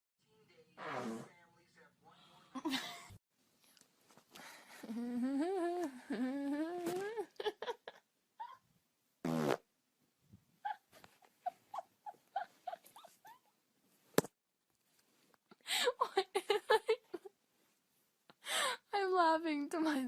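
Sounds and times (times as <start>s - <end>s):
farting: 0.8s - 1.3s, 9.2s - 9.6s.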